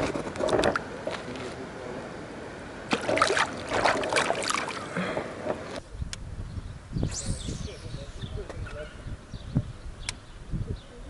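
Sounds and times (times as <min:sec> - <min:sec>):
water splashing and dribbling: 0:02.9 - 0:04.9.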